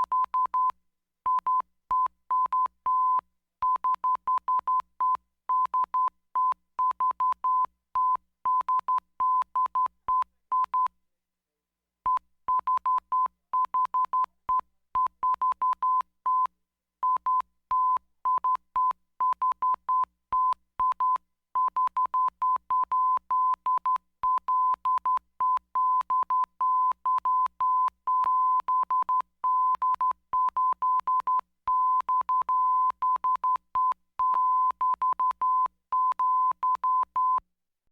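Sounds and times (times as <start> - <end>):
morse code beeps: 17.1 - 37.4.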